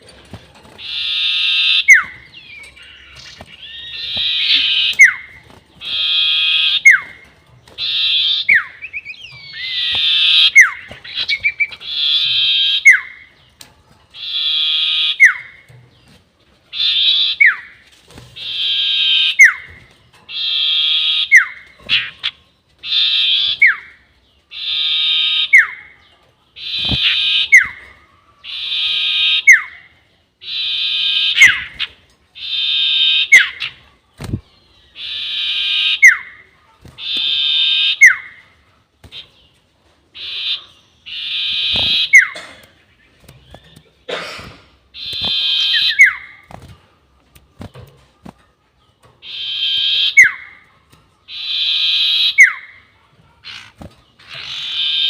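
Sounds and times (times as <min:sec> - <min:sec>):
bird whistling call: 0:07.8 - 0:13.2, 0:35.0 - 0:36.4, 0:40.2 - 0:42.4, 0:45.0 - 0:46.4, 0:49.2 - 0:50.6, 0:51.3 - 0:52.8, 0:54.4 - 0:55.0.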